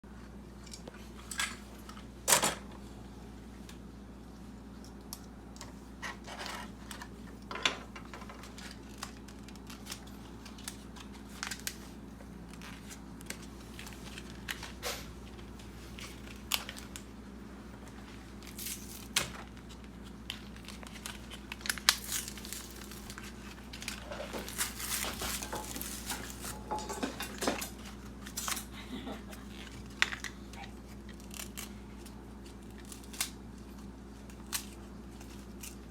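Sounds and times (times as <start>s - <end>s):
steady low hum: 0.1s - 35.9s
plastic and cardboard crinkling: 8.0s - 17.1s, 18.0s - 35.9s.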